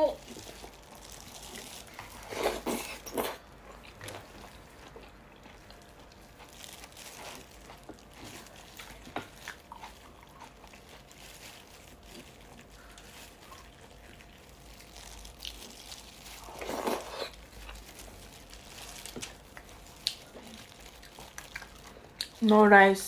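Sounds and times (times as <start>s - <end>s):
soft chewing: 0.0s - 22.6s.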